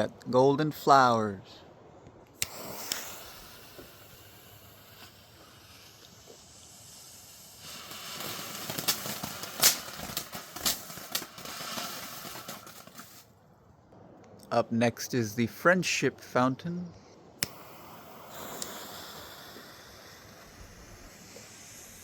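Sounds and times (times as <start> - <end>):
firework crackles and pops: 2.3 - 13.4, 17.4 - 22.0
firework fountain hissing: 2.3 - 13.4, 17.4 - 22.0.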